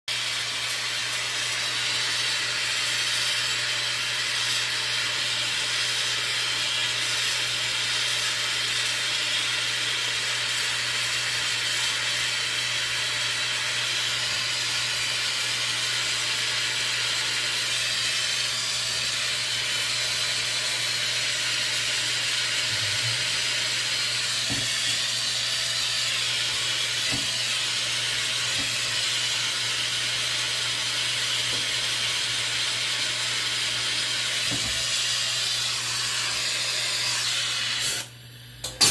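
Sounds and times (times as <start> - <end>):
torch flame hissing: 0.1 - 38.9.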